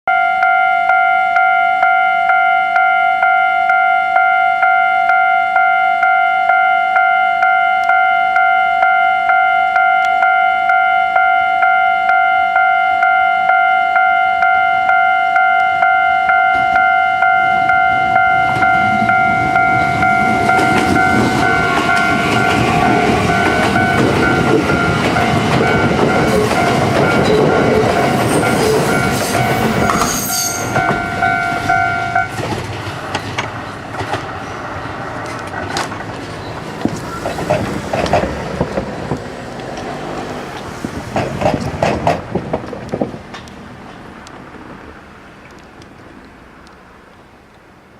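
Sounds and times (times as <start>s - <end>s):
level-crossing warning bell: 0.1s - 32.4s
electric train passing: 0.1s - 47.9s.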